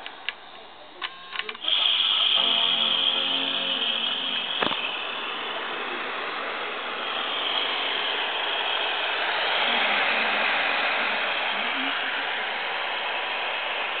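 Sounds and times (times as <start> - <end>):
click: 0.0 - 1.7, 4.6 - 4.8
rattling hiss from computer: 0.0 - 14.0.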